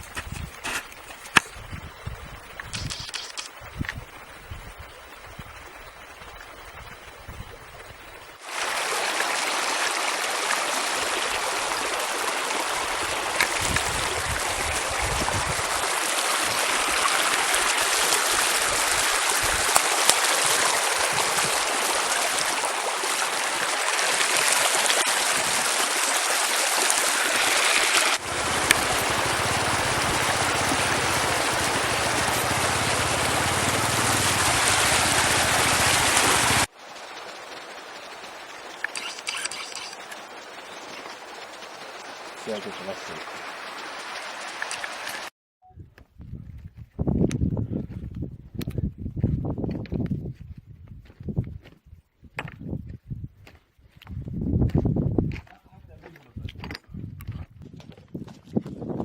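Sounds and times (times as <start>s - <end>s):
stream water rushing: 8.4s - 45.3s.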